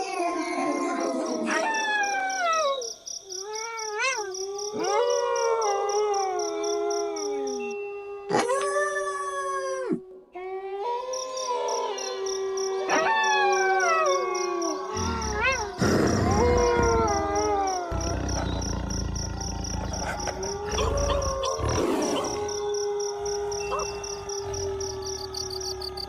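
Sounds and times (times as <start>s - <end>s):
insects chirping: 0.1s - 7.8s, 11.1s - 26.0s
wolves howling: 11.6s - 26.0s.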